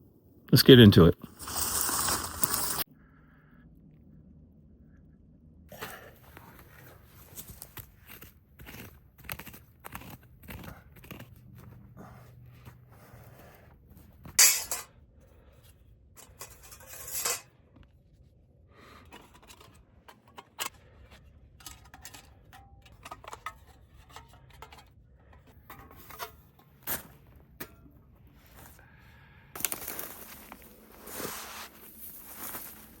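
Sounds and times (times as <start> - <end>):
rustling: 29.6 - 33.0.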